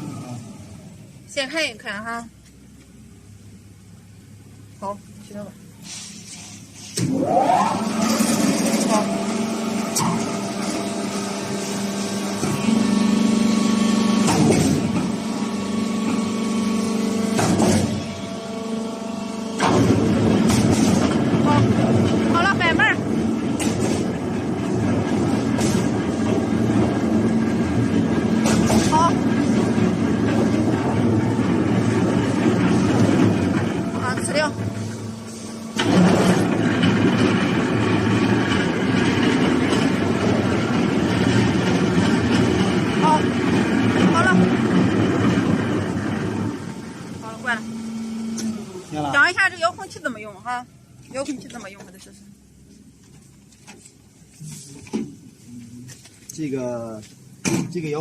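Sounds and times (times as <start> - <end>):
machinery humming: 0.0 - 2.3, 2.9 - 52.8
rattling bursts: 19.6 - 35.1, 35.8 - 47.6.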